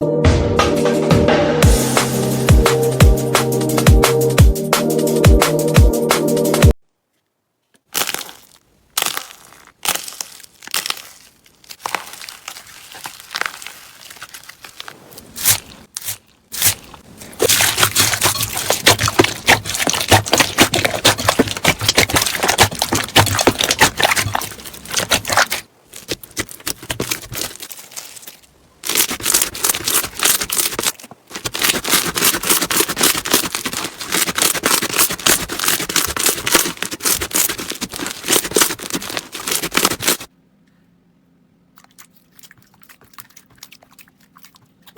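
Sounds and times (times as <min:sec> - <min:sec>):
slime crackling and popping: 0:07.8 - 0:40.3.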